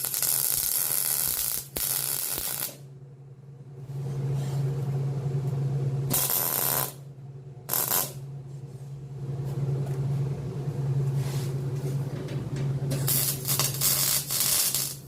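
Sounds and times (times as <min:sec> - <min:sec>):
welding arc hiss: 0:00.0 - 0:02.8, 0:06.1 - 0:07.0, 0:07.7 - 0:08.2, 0:12.9 - 0:15.0
welding machine humming: 0:00.0 - 0:02.9, 0:06.0 - 0:08.3, 0:11.7 - 0:15.0.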